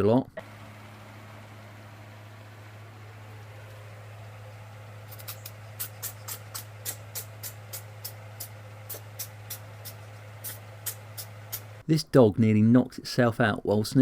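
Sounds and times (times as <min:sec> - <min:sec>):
kitten sneezing: 0:05.2 - 0:11.7.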